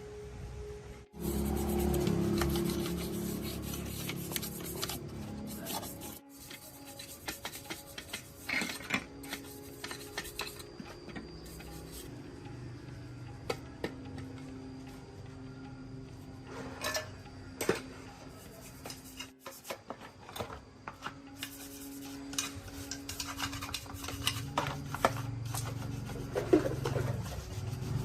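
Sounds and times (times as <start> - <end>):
soft music: 0.0 - 28.0
hand tool scraping: 1.2 - 12.1, 18.4 - 19.8, 21.4 - 28.0.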